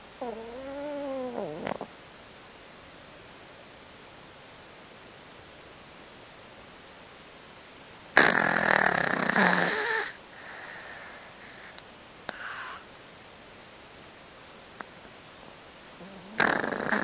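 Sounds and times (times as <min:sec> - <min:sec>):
dog snoring: 0:00.2 - 0:01.9, 0:08.2 - 0:10.2, 0:16.0 - 0:17.0
faint click: 0:11.7 - 0:12.4.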